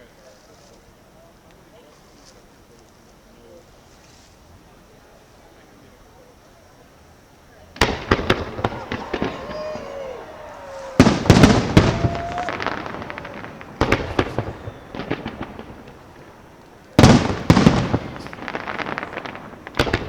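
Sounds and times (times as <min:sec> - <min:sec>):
fireworks bangs and crackles: 0:07.8 - 0:20.0
rumbling fireworks tails: 0:07.8 - 0:20.0.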